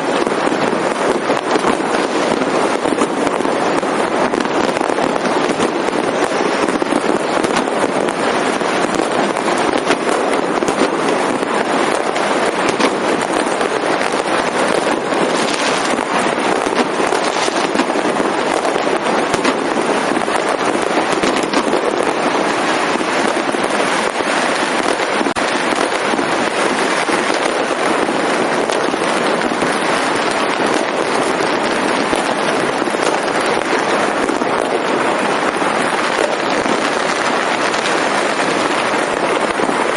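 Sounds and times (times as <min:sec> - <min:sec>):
fireworks and firecrackers crackling: 0:00.0 - 0:39.9.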